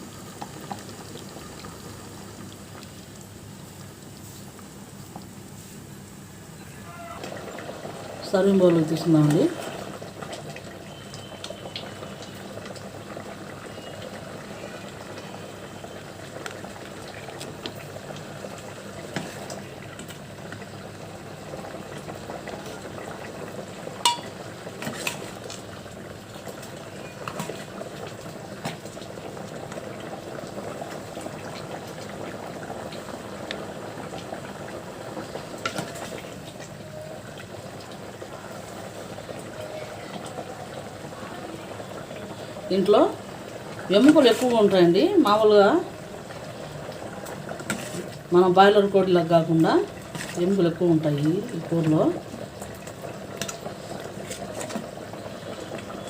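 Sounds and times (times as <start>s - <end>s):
curry bubbling and sloshing: 6.9s - 56.0s
ladle clinking against bowl: 24.0s - 24.3s.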